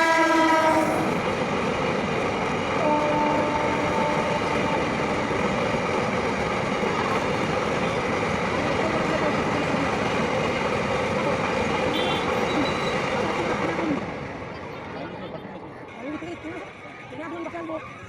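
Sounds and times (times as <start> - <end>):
train horn: 0.0 - 1.2, 2.8 - 5.2, 11.9 - 12.4
train running past: 0.0 - 18.0.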